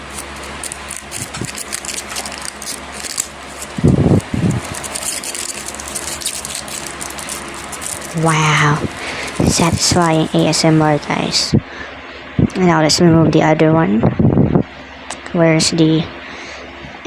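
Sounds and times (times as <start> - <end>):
plastic film peeling crinkling: 0.0 - 10.1.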